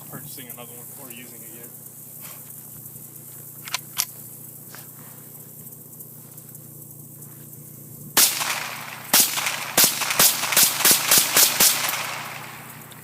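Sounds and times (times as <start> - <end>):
rifle shots: 8.2 - 13.0.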